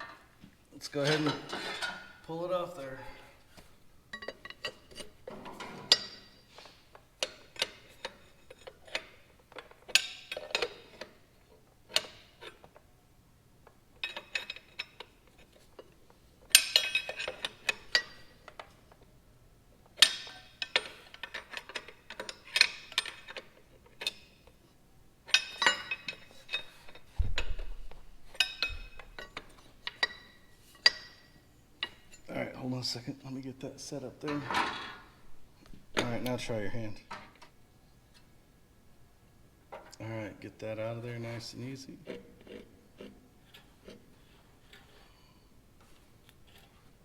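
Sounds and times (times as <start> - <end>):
metal tools clinking: 1.0 - 3.2, 4.1 - 11.2, 14.0 - 19.0, 19.8 - 24.6, 25.3 - 32.3.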